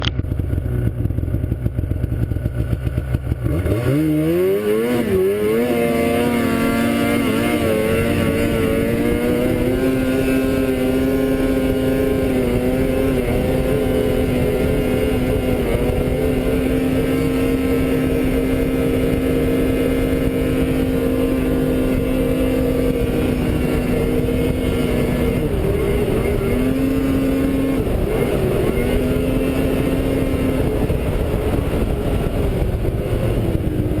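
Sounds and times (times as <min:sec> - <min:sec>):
engine revving: 0:00.0 - 0:34.0.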